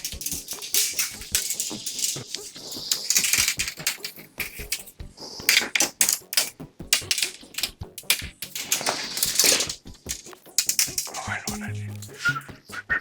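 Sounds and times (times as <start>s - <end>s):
hiss: 0.0s - 5.9s
rapid irregular clicking and rattling: 0.0s - 12.2s.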